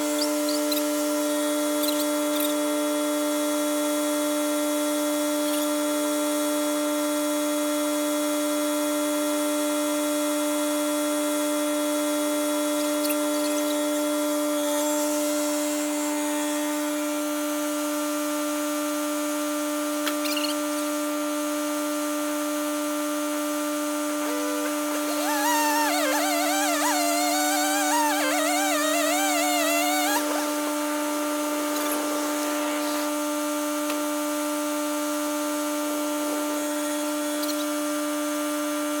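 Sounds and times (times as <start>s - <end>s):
tractor engine whining: 24.0s - 34.2s.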